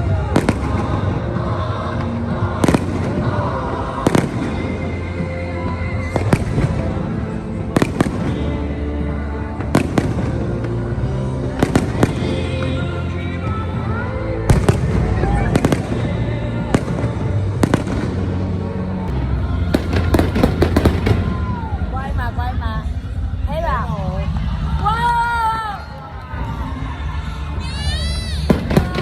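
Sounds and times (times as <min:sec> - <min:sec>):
music with steady bass: 0:00.0 - 0:29.0
fireworks bangs: 0:14.5 - 0:23.4, 0:27.9 - 0:29.0.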